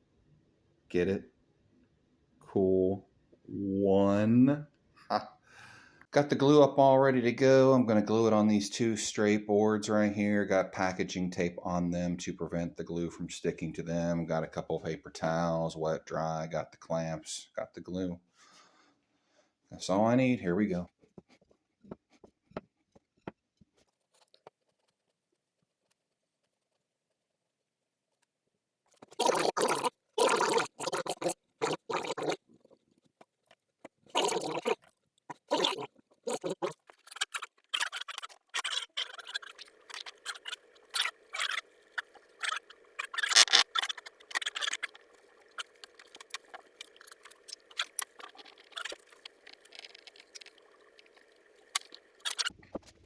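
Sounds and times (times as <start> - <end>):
faint steady hum: 38.6 - 52.5.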